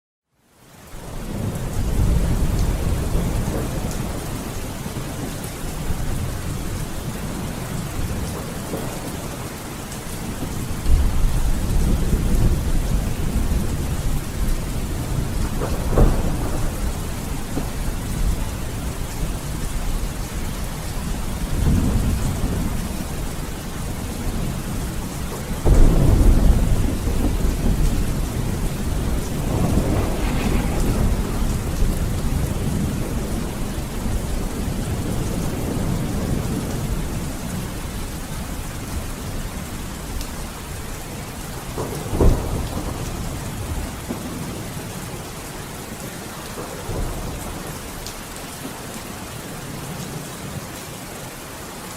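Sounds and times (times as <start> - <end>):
heavy rain hissing: 0.9 - 51.9
thunder rumbling: 1.1 - 40.8, 41.6 - 45.0.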